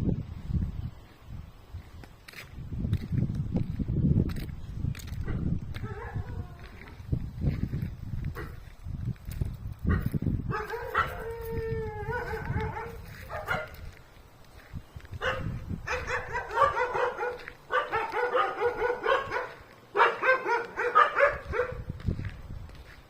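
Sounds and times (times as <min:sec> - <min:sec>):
dog howling and yipping: 0:05.8 - 0:07.0, 0:10.5 - 0:13.8, 0:15.2 - 0:21.8.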